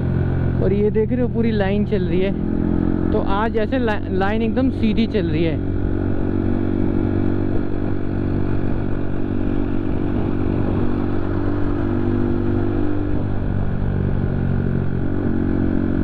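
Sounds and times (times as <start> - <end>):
motorcycle engine cruising: 0.0 - 16.0.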